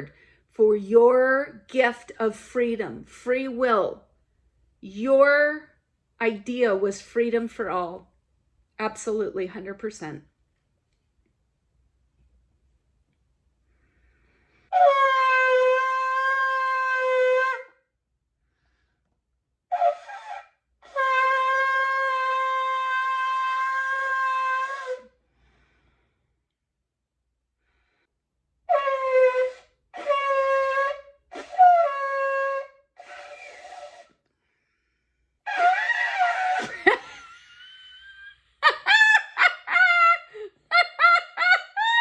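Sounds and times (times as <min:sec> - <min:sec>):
shofar blasts: 0:14.7 - 0:17.8, 0:19.7 - 0:25.2, 0:28.7 - 0:34.1, 0:35.5 - 0:36.6.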